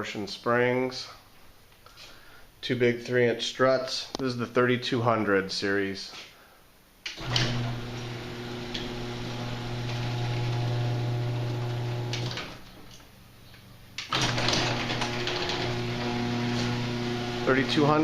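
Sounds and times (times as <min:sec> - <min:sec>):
garage door opener motor humming: 0:07.2 - 0:12.7, 0:14.0 - 0:18.0.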